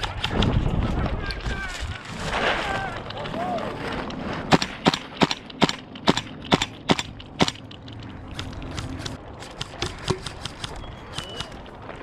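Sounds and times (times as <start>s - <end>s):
airsoft gun shots: 4.5s - 7.6s.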